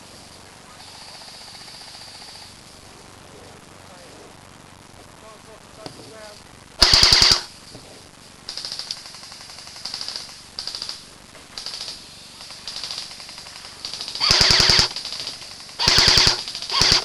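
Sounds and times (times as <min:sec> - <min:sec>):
airsoft rifle full-auto bursts: 0:06.8 - 0:07.5, 0:08.5 - 0:11.0, 0:11.6 - 0:17.0
distant airsoft gun bursts: 0:06.8 - 0:07.6, 0:08.5 - 0:17.0.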